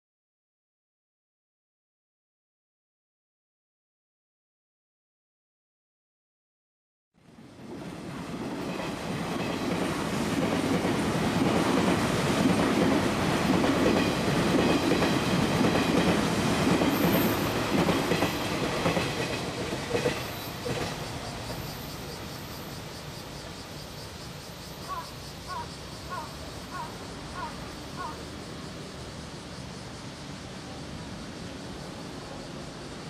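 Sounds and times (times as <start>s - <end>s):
passenger train passing at speed: 7.2s - 33.0s.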